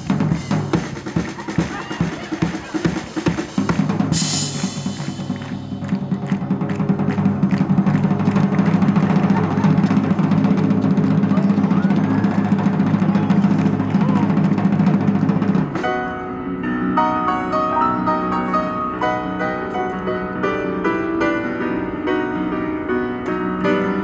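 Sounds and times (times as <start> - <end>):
rolling drum beat: 0.0 - 16.2.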